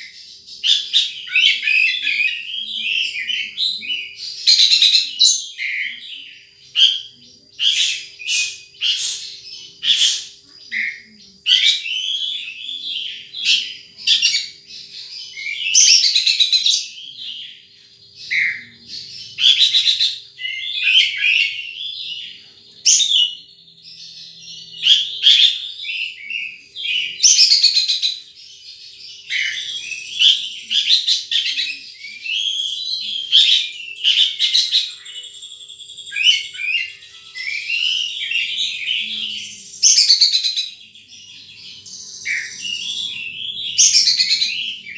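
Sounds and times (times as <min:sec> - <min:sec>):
sunbird chirping and trilling: 0:00.0 - 0:44.9.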